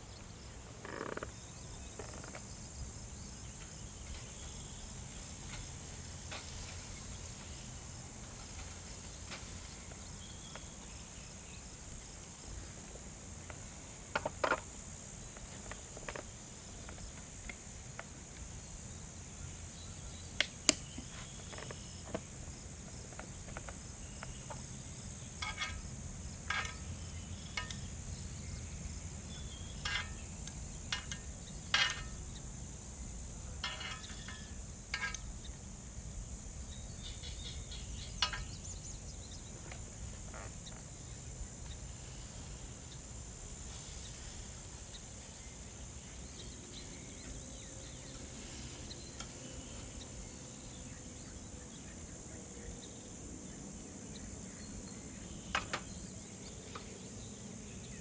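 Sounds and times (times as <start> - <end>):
crickets chirping: 0.0 - 58.0
sharp clicks and knocks: 25.4 - 26.9, 27.5 - 27.9, 29.8 - 32.4, 33.6 - 35.3, 55.5 - 56.0.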